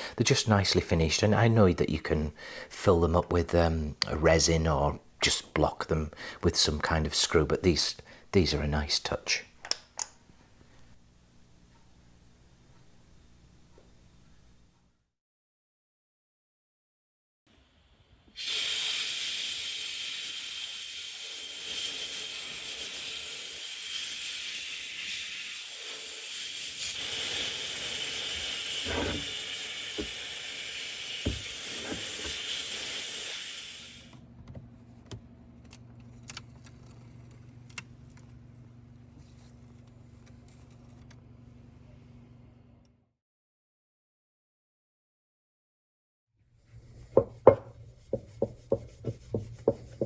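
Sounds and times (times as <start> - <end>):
media blaster hissing: 18.3 - 34.1.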